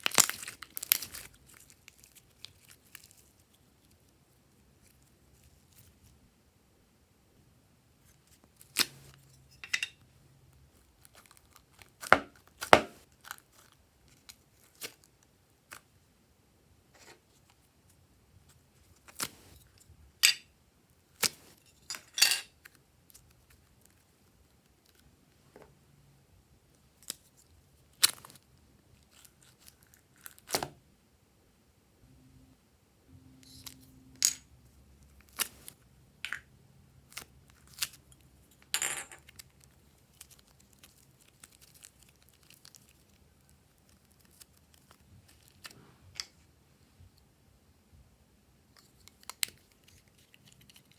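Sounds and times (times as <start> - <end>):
slime popping and crackling: 0.0 - 3.0.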